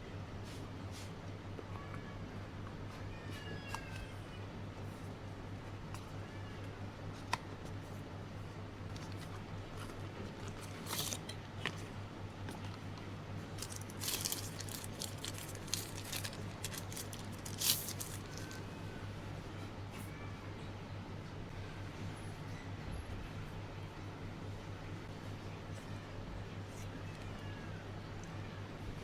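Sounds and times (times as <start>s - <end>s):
packaging rustling: 8.9s - 18.7s.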